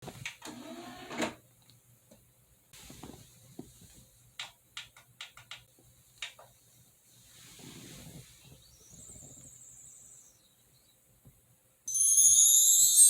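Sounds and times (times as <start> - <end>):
faint hiss: 2.7 - 4.4, 5.8 - 11.6
sharp clicks and taps: 4.4 - 6.5.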